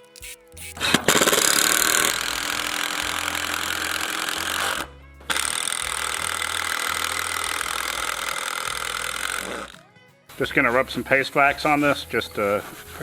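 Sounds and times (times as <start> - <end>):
power tool running on wood: 0.0 - 9.8
background music: 0.0 - 13.0.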